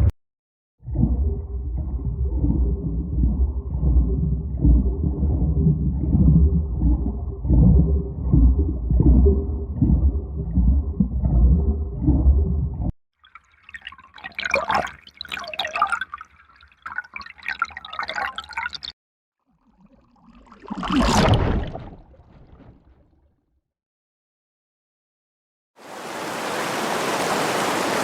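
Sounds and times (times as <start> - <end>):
muffled underwater bubbling: 0.8 - 12.9
water dripping and trickling: 13.2 - 21.0.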